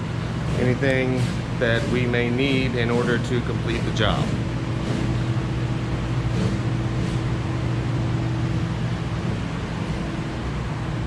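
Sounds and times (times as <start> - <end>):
fan blower humming: 0.0 - 11.0.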